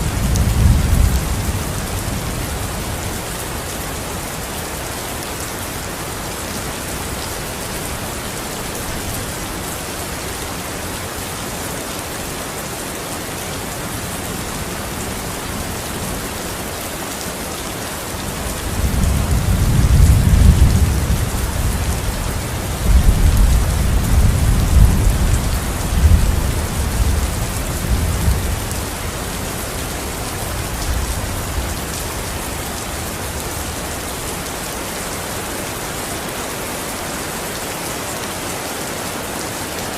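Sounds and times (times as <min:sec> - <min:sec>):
rain on a hard surface: 0:00.0 - 0:39.9
rolling thunder rumble: 0:18.5 - 0:34.0.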